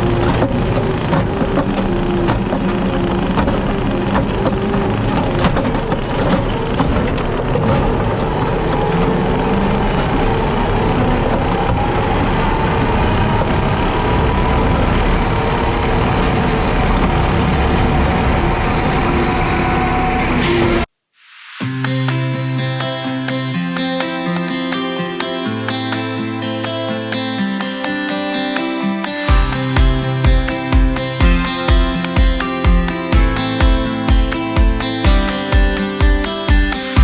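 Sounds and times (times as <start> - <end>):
diesel engine under load: 0.0 - 20.9.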